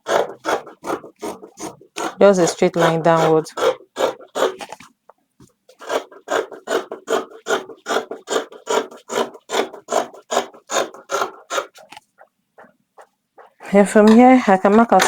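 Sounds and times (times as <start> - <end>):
scissors cutting fabric: 0.0 - 4.9, 5.8 - 12.2.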